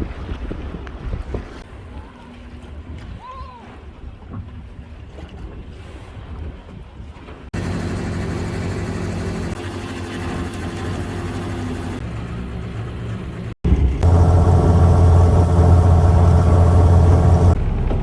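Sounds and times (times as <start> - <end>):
boat engine humming: 7.6 - 18.0.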